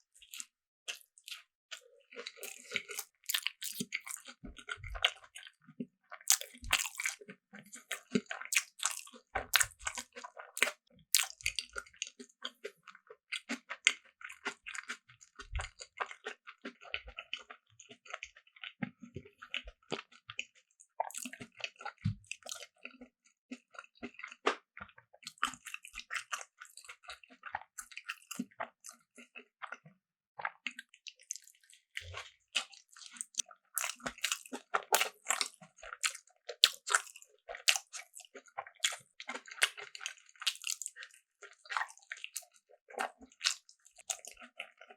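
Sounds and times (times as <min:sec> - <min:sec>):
person chewing food: 0:00.0 - 0:44.9
mouth clicks and smacks: 0:02.4 - 0:05.2, 0:06.2 - 0:07.2, 0:07.8 - 0:12.2, 0:30.4 - 0:37.1.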